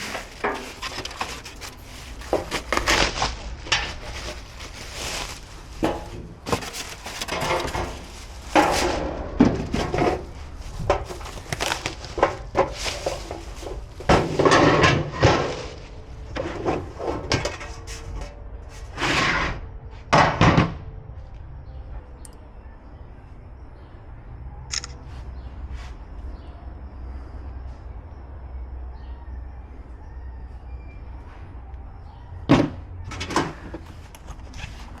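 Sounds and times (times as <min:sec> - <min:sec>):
grill parts knocking and clunking: 0:00.0 - 0:18.3
sliding scrapes: 0:00.0 - 0:19.6.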